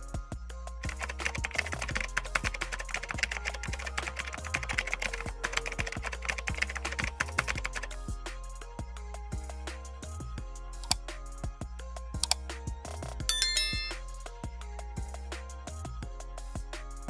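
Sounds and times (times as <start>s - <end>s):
background music with bass: 0.0s - 17.0s
dense rapid clicking: 0.8s - 7.9s.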